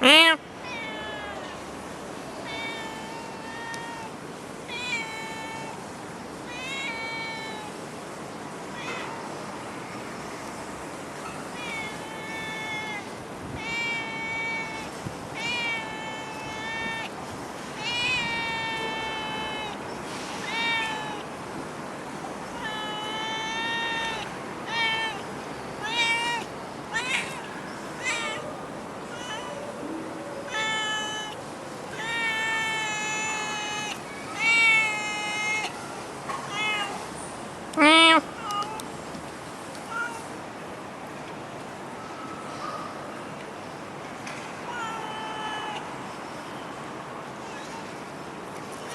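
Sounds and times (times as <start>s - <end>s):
cat meowing: 0.0s - 7.8s, 8.7s - 9.4s, 11.5s - 21.4s, 22.4s - 37.0s, 37.7s - 38.9s, 39.8s - 40.3s, 44.6s - 45.9s.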